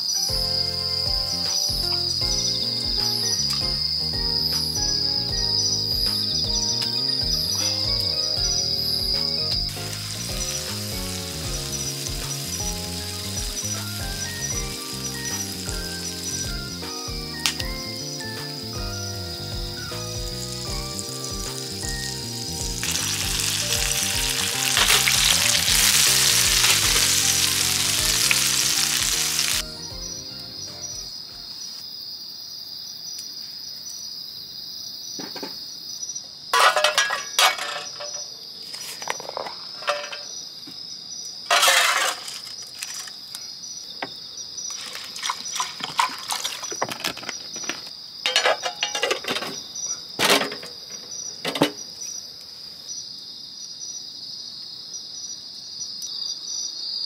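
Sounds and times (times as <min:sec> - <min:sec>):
crickets chirping: 0:00.0 - 0:57.0
oil sizzling loudly: 0:04.5 - 0:29.8, 0:44.7 - 0:46.8
clinks and knocks: 0:36.5 - 0:38.3, 0:38.9 - 0:40.4, 0:41.5 - 0:43.2, 0:44.7 - 0:49.6.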